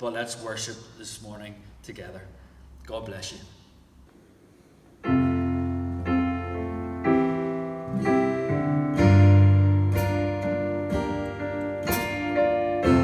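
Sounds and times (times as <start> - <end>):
piano playing slow chords: 5.0 - 13.0.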